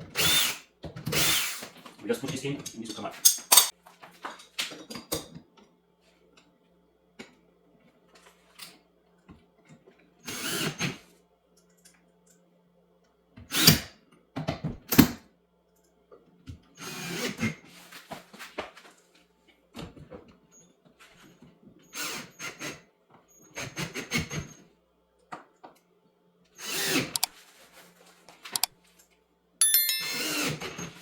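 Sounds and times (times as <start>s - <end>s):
cordless drill running in bursts: 1.2s - 1.6s.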